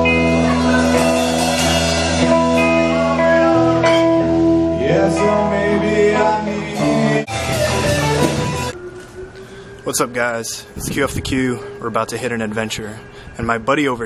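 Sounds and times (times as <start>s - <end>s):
steady bass: 0.0s - 8.8s
guitar background music: 0.0s - 9.2s.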